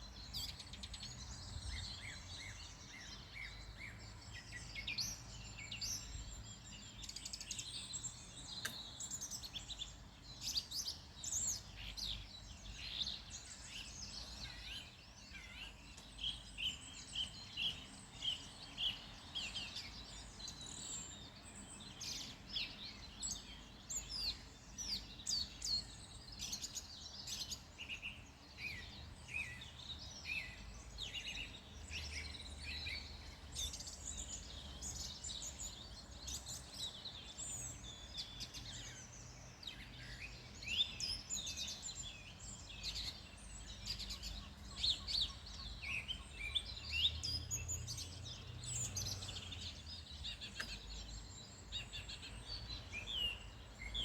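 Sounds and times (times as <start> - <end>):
wild birds singing and calling: 0.0 - 54.0.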